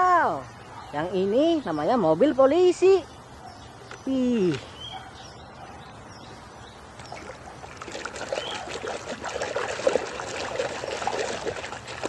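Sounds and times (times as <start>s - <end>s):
water splashing and dribbling: 6.8s - 12.0s.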